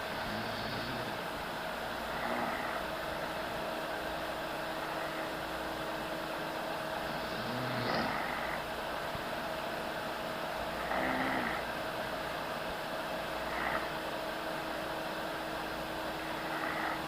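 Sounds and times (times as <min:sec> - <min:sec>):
steady low hum: 0:00.0 - 0:17.0
slow snoring breath: 0:00.2 - 0:01.2, 0:02.1 - 0:02.9, 0:07.0 - 0:08.7, 0:10.8 - 0:11.7, 0:13.5 - 0:14.0, 0:16.2 - 0:17.0.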